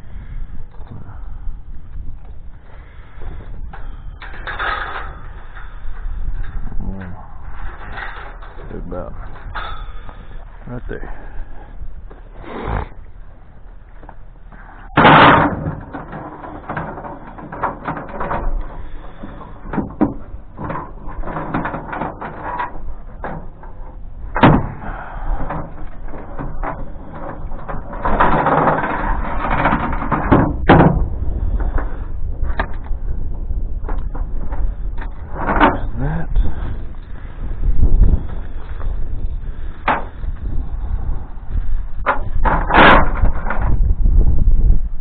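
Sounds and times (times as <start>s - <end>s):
metal chain and gate rattling: 3.8s - 10.2s.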